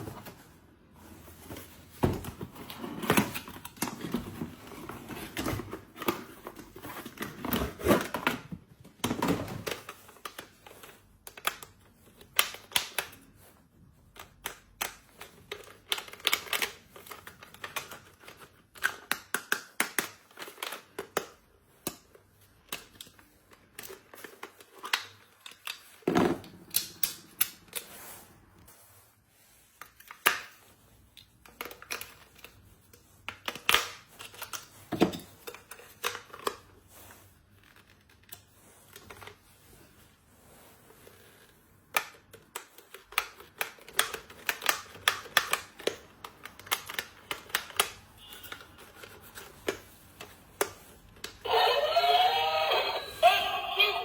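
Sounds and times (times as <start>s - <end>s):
plastic toys clicking and tapping: 14.1s - 26.0s, 31.2s - 32.6s, 33.2s - 36.7s, 41.9s - 54.0s.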